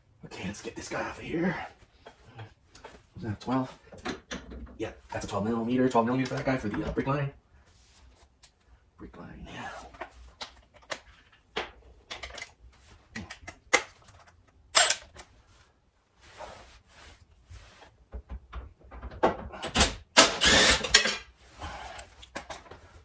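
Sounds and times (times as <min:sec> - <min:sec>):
ratchet clicking and knocking: 0:19.0 - 0:21.2.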